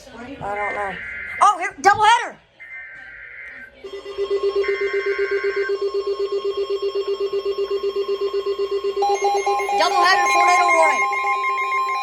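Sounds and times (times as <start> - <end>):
pulsing alarm tone: 0.7 - 1.8, 2.6 - 12.0
screechy data tones: 0.7 - 1.8, 9.0 - 12.0
steady higher tone: 3.8 - 12.0.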